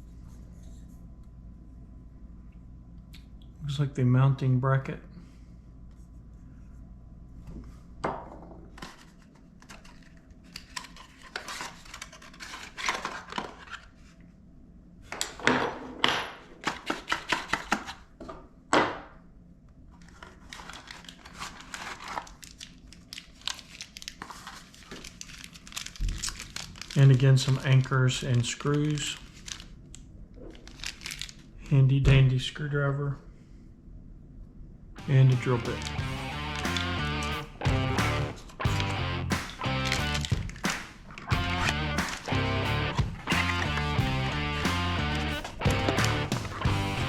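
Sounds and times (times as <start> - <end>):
packaging crinkling and tearing: 8.8 - 13.9, 20.0 - 28.0, 30.5 - 31.5, 39.6 - 42.3.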